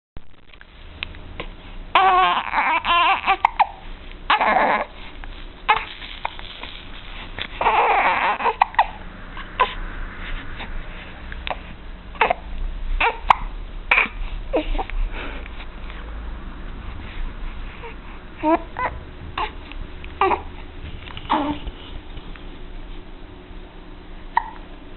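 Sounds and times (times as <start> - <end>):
fussy infant vocal sounds: 1.4 - 6.8, 7.4 - 10.7, 11.4 - 15.6, 17.1 - 21.8, 24.3 - 24.7
baby hiccuping: 3.3 - 4.5, 7.7 - 9.0, 11.5 - 14.2, 24.3 - 24.6.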